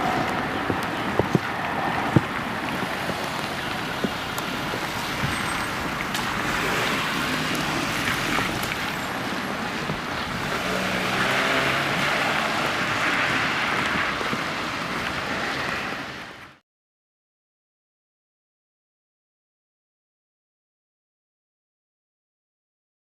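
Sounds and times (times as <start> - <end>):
vehicle noise: 0.0 - 16.6.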